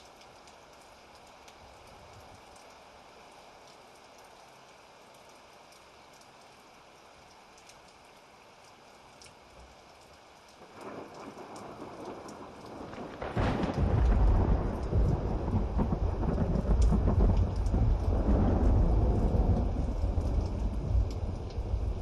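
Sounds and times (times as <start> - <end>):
rain hissing: 9.3 - 22.0
thunder rumbling: 10.8 - 22.0.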